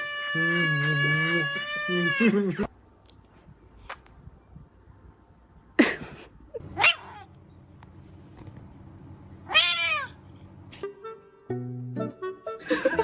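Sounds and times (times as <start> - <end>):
cat calling: 9.5 - 10.2.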